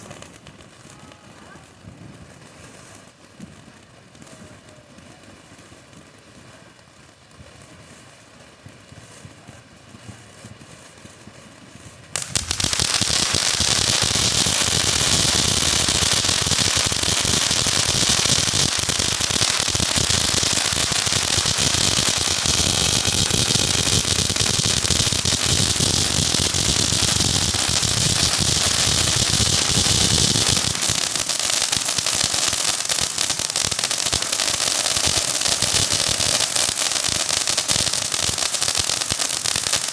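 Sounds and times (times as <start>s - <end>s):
firework crackling: 0.0s - 39.9s.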